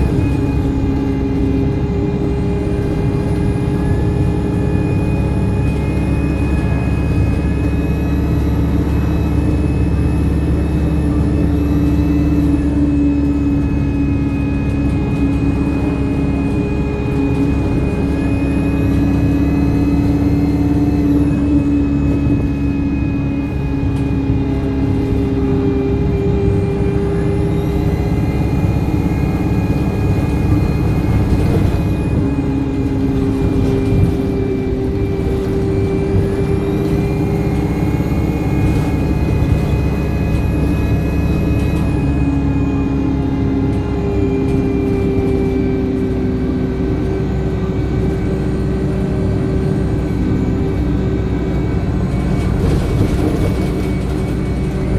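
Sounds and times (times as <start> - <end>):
bus diesel engine running: 0.0 - 54.9
turbocharger whine: 0.0 - 54.9.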